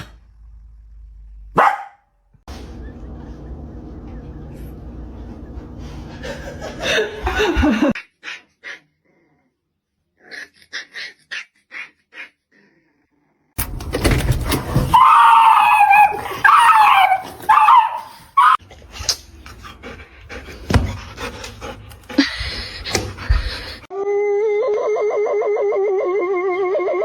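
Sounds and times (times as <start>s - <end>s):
dog yelping: 1.6s - 2.0s, 14.9s - 18.6s
dog whining: 14.9s - 18.6s.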